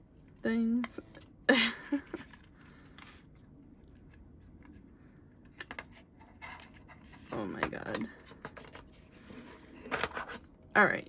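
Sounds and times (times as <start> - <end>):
plastic case rustling and scraping: 5.6 - 10.5.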